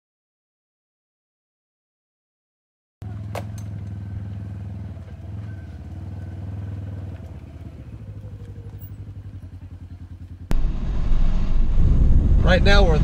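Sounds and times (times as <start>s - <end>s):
vehicle engine humming: 3.0s - 13.0s.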